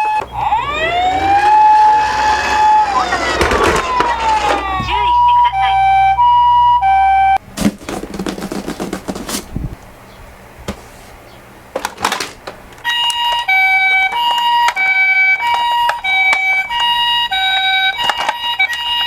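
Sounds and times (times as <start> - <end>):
toy cars clattering: 0.0 - 6.1, 11.7 - 19.0
toy electronic sirens: 0.0 - 7.4, 12.8 - 19.0.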